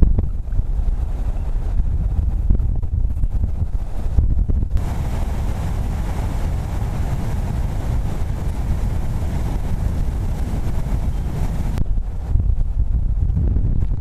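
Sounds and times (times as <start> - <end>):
heavy low rumble: 0.0 - 14.0
strong wind buffeting microphone: 0.0 - 14.0.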